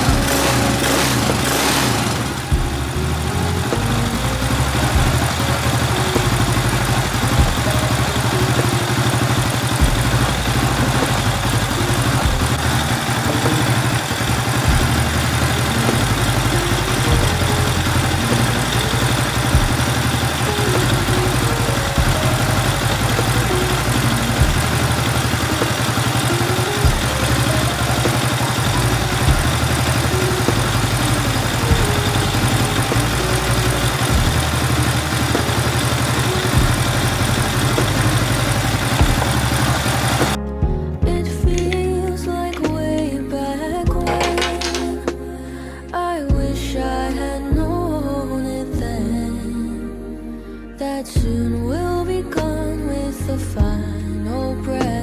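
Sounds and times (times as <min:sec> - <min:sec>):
motorcycle engine idling: 0:00.0 - 0:40.8, 0:43.9 - 0:45.1.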